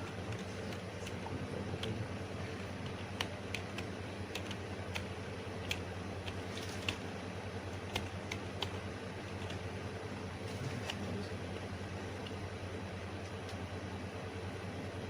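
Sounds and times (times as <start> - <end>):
computer keys clicking: 0.0 - 2.0, 2.7 - 7.0, 7.8 - 9.6
steady low hum: 0.0 - 15.0.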